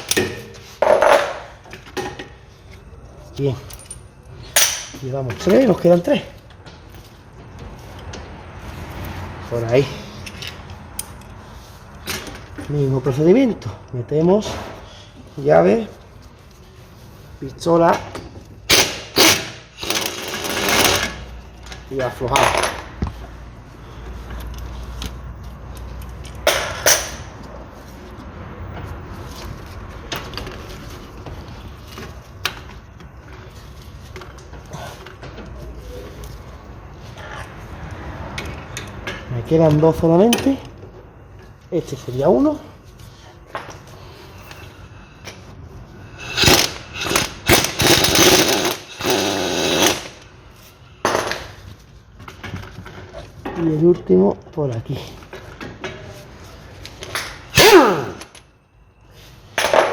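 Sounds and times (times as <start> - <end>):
impact wrench hammering: 4.6 - 5.0, 18.7 - 21.2, 46.2 - 50.2, 57.6 - 58.2
short sharp tool bursts: 18.7 - 21.2, 46.2 - 50.2, 57.5 - 58.2.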